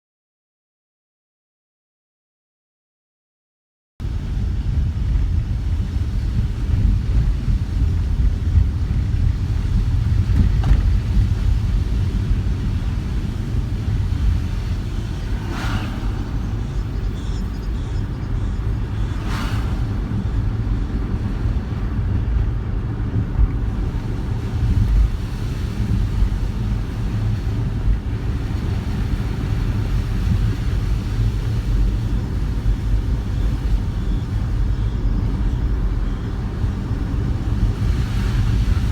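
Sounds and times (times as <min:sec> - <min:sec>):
car road and engine rumble: 0:04.0 - 0:38.9
brief hissing swells: 0:15.0 - 0:17.7.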